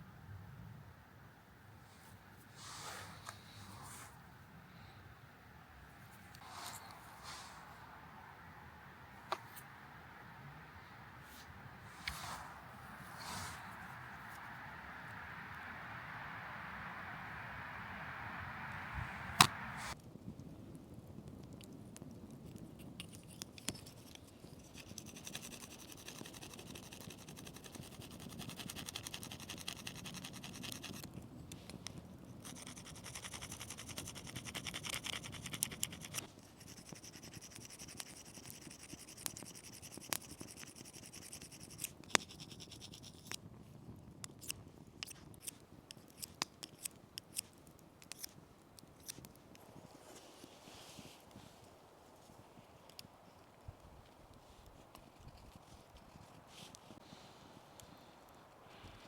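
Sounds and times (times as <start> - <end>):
fine scraping strokes: 1.8 - 4.9, 6.0 - 20.0, 49.0 - 52.6.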